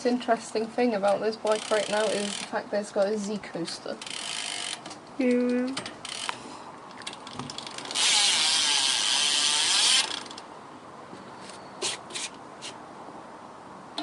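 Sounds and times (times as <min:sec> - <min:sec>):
bicycle hub ratcheting: 0:01.4 - 0:02.6, 0:03.9 - 0:10.5.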